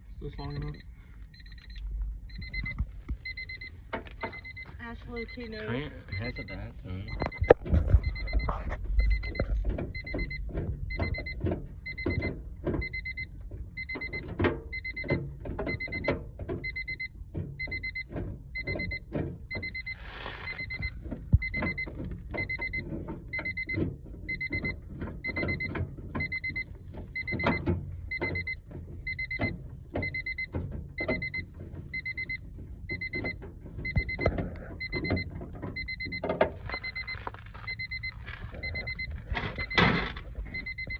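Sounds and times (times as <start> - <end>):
car warning chime beeping: 0.1 - 40.9
clicks and knocks on car door: 7.2 - 19.9, 20.5 - 37.2.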